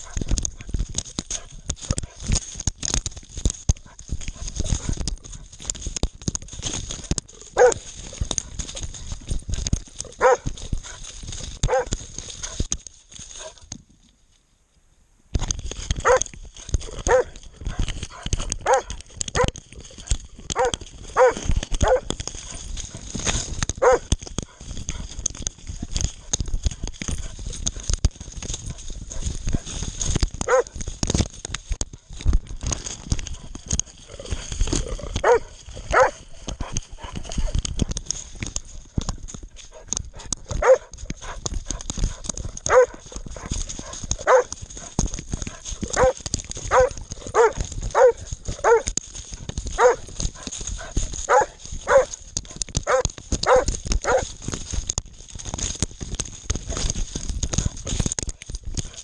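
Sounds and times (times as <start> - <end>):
rustling in brush: 0.0 - 14.5, 15.4 - 59.0
dog bark: 7.6 - 7.8, 10.2 - 11.0, 11.7 - 12.6, 16.0 - 16.3, 17.1 - 17.4, 18.6 - 19.6, 20.6 - 22.1, 23.8 - 24.1, 30.4 - 30.7, 35.2 - 36.2, 40.6 - 40.9, 42.7 - 43.0, 44.2 - 44.5, 46.0 - 48.9, 49.8 - 50.0, 51.3 - 52.2, 52.8 - 54.3.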